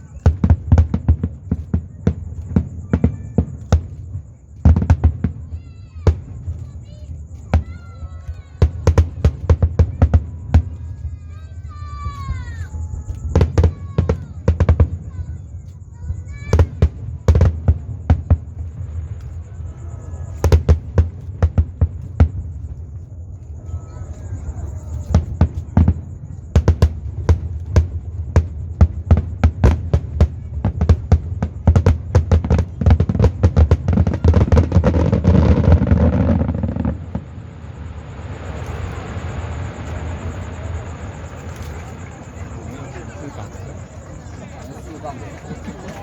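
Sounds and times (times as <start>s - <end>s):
fireworks bursting: 0.0s - 46.0s.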